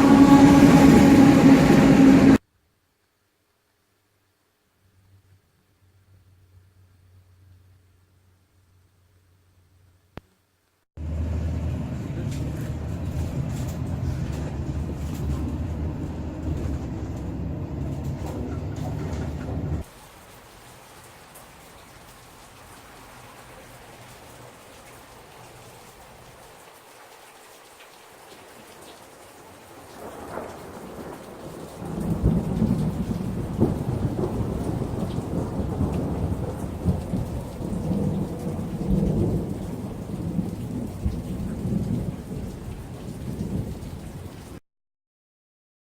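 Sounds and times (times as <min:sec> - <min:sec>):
thunder rumbling: 0:00.0 - 0:02.4, 0:11.0 - 0:20.0, 0:29.9 - 0:44.6
rain hiss: 0:00.0 - 0:08.8, 0:19.8 - 0:44.6.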